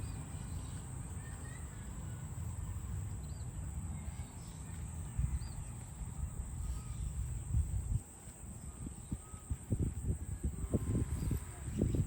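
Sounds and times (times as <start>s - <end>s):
faint high chirps: 0.0s - 7.7s, 8.4s - 12.0s.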